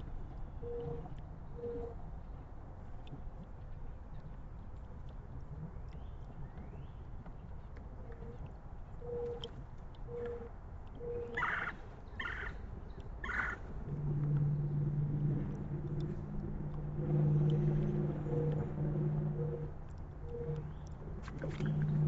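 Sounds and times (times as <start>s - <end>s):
harsh bird calls: 11.0s - 12.6s, 13.2s - 13.6s
low motor drone: 12.6s - 22.0s
low hooting note: 13.6s - 22.0s.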